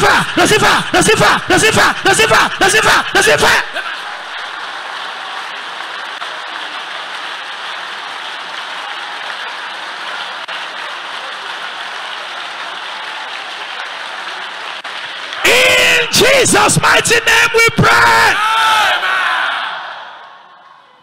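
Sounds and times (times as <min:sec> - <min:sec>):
crowd applauding: 0:00.0 - 0:19.0.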